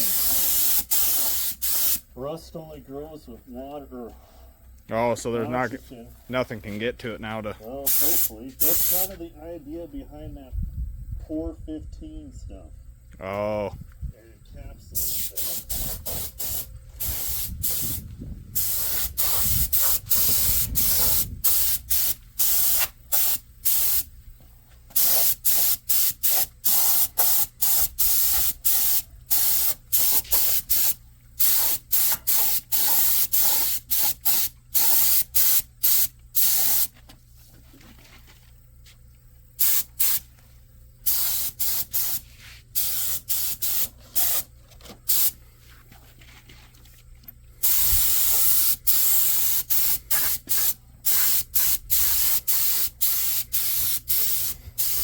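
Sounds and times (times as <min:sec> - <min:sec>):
coating spray hissing bursts: 0:00.0 - 0:02.0, 0:07.9 - 0:09.2, 0:15.0 - 0:18.0, 0:18.6 - 0:24.1, 0:25.0 - 0:36.9, 0:39.6 - 0:40.2, 0:41.1 - 0:44.4, 0:45.1 - 0:45.4, 0:47.6 - 0:55.0.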